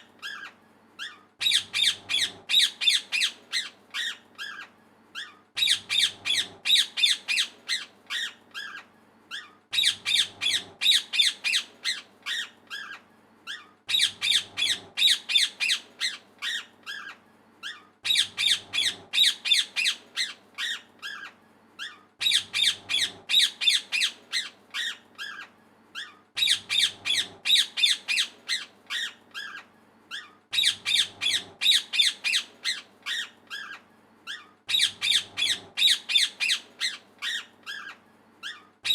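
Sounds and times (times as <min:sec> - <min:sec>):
parrot squawking: 0:00.2 - 0:38.9.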